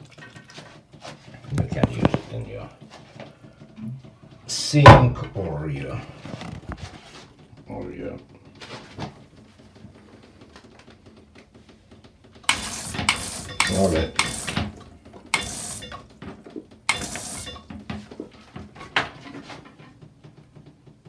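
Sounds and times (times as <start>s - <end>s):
bidet sprayer hissing bursts: 12.5s - 16.2s, 16.9s - 18.0s.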